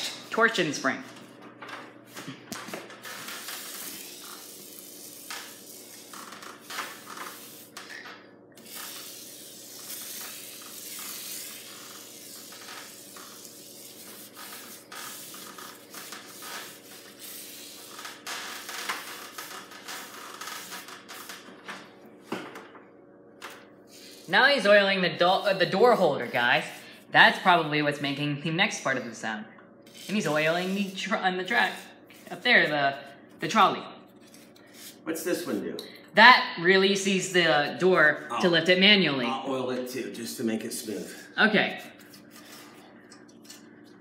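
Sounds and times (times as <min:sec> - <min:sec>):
rubbing: 0:08.6 - 0:21.4.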